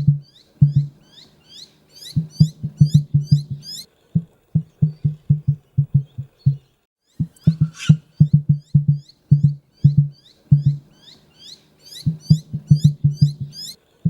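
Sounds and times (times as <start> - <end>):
short high chirping calls: 0.0 - 3.9, 4.6 - 13.8
low plucked rhythmic pattern: 2.2 - 6.6, 12.1 - 13.6.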